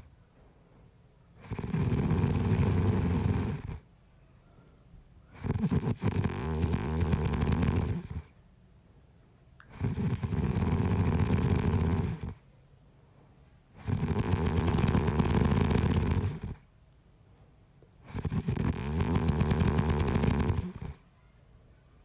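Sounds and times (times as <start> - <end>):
man snoring: 1.4 - 3.8, 5.4 - 8.2, 9.7 - 12.4, 13.8 - 16.6, 18.1 - 20.9.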